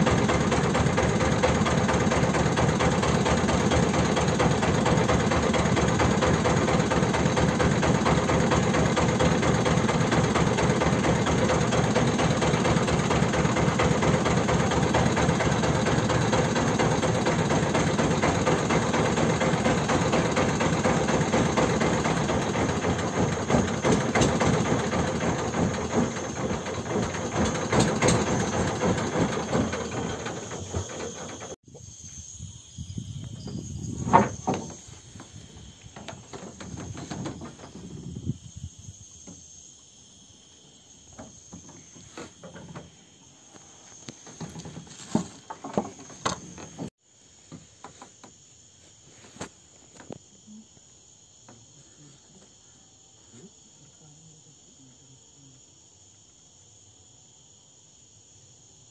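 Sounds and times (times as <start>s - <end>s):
small boat engine running: 0.0s - 31.6s
crickets chirping: 0.0s - 58.9s.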